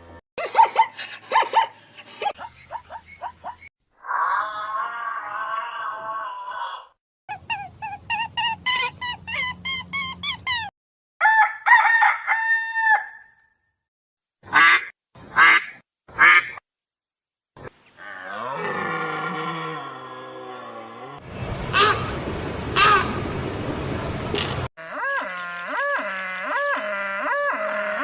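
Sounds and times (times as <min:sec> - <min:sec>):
rooster crowing: 0:11.2 - 0:13.4.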